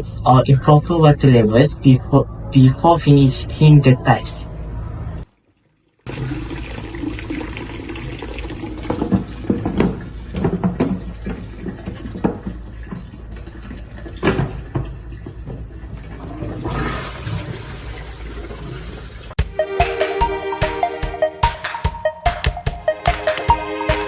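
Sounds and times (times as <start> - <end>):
toilet flushing and filling: 6.1 - 19.4.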